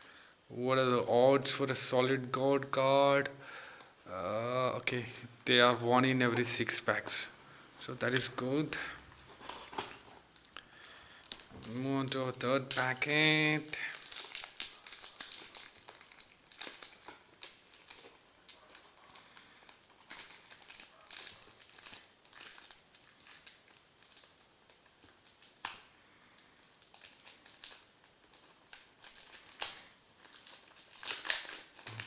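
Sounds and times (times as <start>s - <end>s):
card pack wrapper crinkling: 8.0s - 32.0s.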